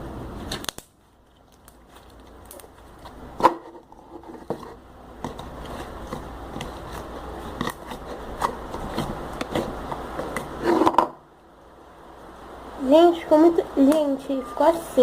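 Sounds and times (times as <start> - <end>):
slime squelching: 0.5 - 4.3, 5.2 - 10.7.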